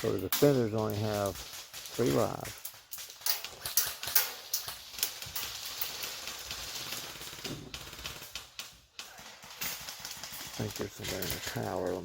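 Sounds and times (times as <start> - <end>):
airsoft guns firing: 6.6 - 11.2.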